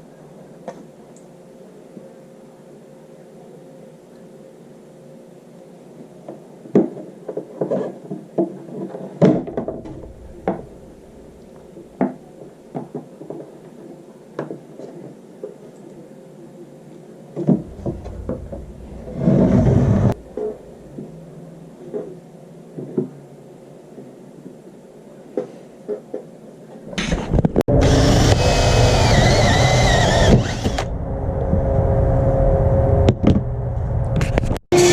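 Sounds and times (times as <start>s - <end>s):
objects knocking and clattering: 9.2s - 12.2s
faint steady hum: 9.3s - 12.9s, 15.0s - 25.8s
scraping or rustling noise: 17.6s - 21.2s.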